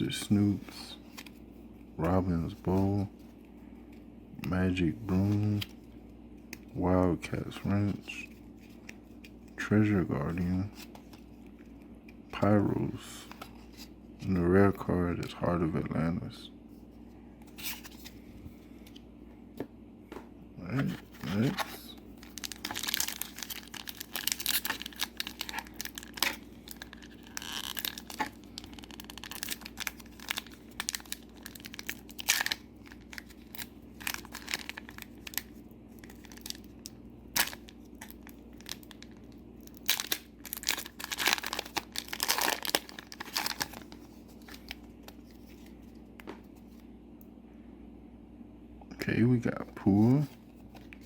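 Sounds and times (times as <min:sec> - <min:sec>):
wrapper tearing and crinkling: 0:22.2 - 0:45.7.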